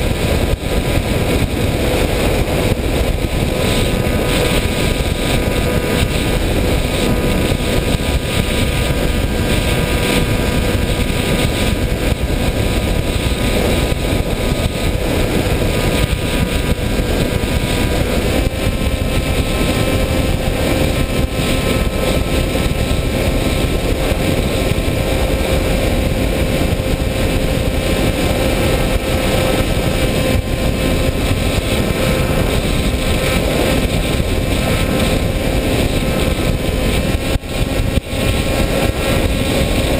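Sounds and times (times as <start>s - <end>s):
model aircraft motor drone: 0.0s - 39.9s
wind rush: 0.0s - 39.9s.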